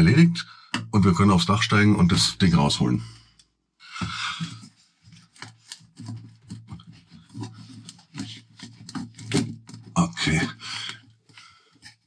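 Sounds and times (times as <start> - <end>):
plastic cap clicking and rubbing: 4.4 - 12.0.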